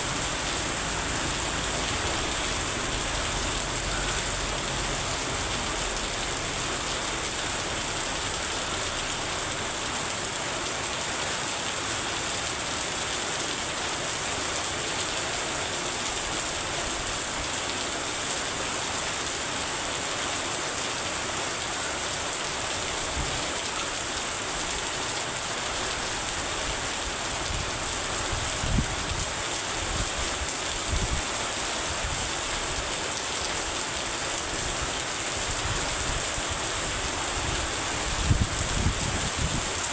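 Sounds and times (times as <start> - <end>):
heavy rain hissing: 0.0 - 12.4, 21.4 - 39.9.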